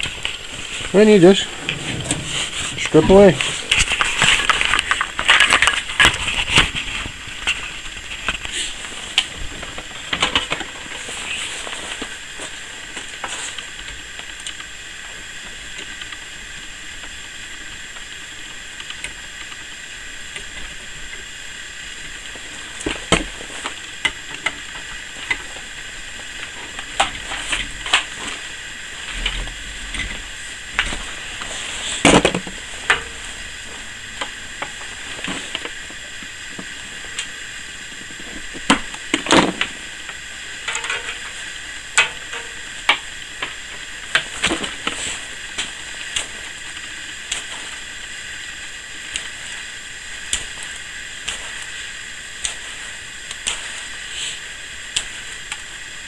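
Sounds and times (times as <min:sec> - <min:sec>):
wire insulation crunching and cracking: 0:00.0 - 0:16.2.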